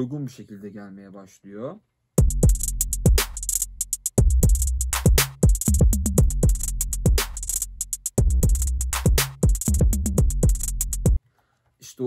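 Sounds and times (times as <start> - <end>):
electronic drum loop: 2.2 - 11.2
hi-hat and clap hits: 2.2 - 11.2.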